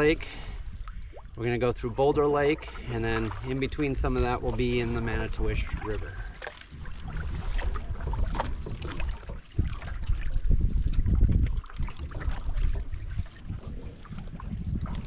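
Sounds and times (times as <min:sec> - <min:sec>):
canoe paddle splashing: 0:00.0 - 0:15.0
wind rumbling on microphone: 0:00.0 - 0:15.0.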